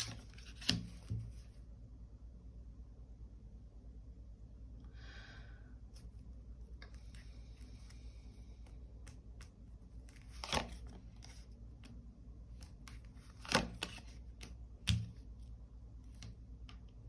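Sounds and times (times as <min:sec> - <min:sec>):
cards rustling and clicking: 0:00.0 - 0:01.4, 0:06.8 - 0:15.3.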